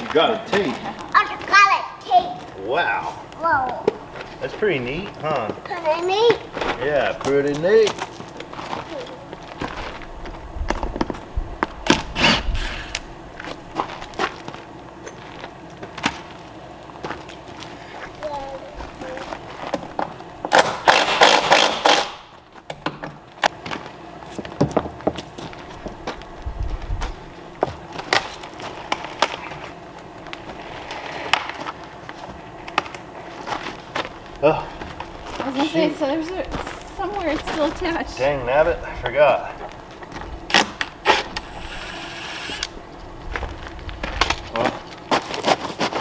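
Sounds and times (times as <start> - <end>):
knocks on wooden forms: 24.4 - 25.3.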